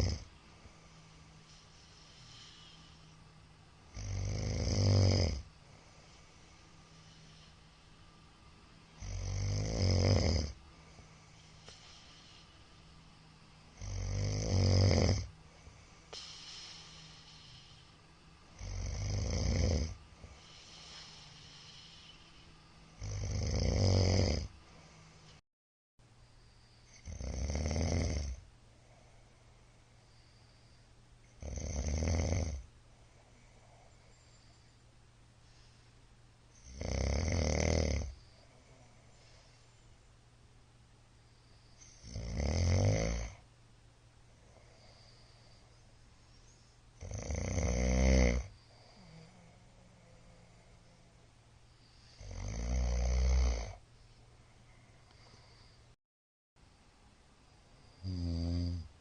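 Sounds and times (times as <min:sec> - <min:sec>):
man snoring loudly: 0:00.0 - 0:00.3, 0:03.9 - 0:05.5, 0:09.0 - 0:10.6, 0:13.7 - 0:15.4, 0:18.5 - 0:22.0, 0:22.9 - 0:24.6, 0:26.9 - 0:28.4, 0:31.4 - 0:32.6, 0:36.6 - 0:38.2, 0:41.8 - 0:43.4, 0:47.0 - 0:49.5, 0:52.1 - 0:53.8, 0:58.0 - 0:58.9.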